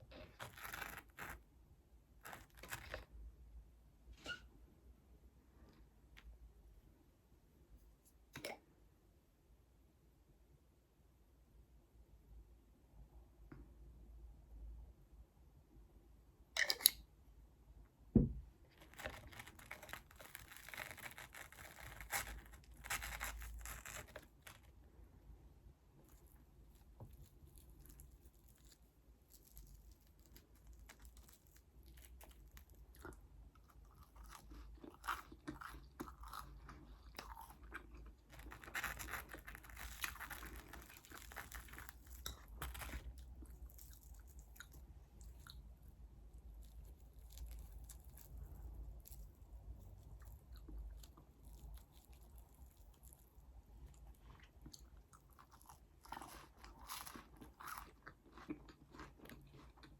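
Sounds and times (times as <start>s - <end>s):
person chewing and crunching food: 0.0s - 1.4s, 2.2s - 3.1s, 18.8s - 24.8s, 26.0s - 59.9s.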